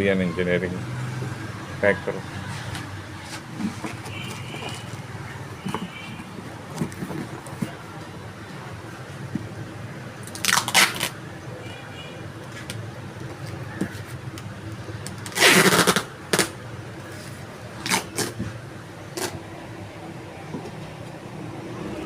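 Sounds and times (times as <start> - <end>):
plastic wrap crinkling: 10.2 - 11.2.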